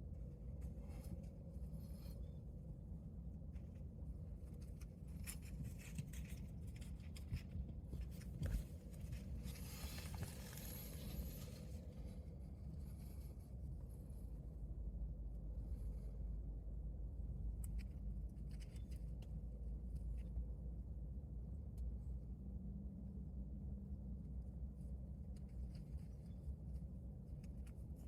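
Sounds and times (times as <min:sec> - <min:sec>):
rustling: 0:04.4 - 0:13.5.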